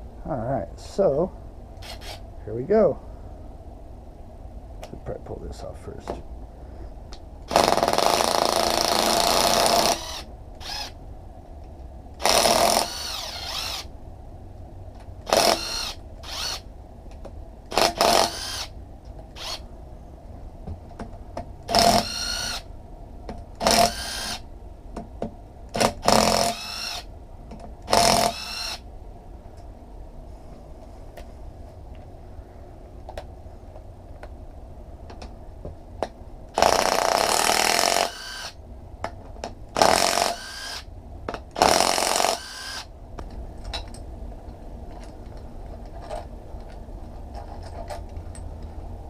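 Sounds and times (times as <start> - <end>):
power tool spinning bolts: 1.8 - 2.2, 7.5 - 11.0, 12.2 - 13.9, 15.2 - 16.6, 17.7 - 18.7, 19.3 - 19.6, 21.7 - 22.6, 23.6 - 24.4, 25.7 - 27.1, 27.8 - 28.8, 36.6 - 38.6, 39.8 - 40.9, 41.5 - 42.9.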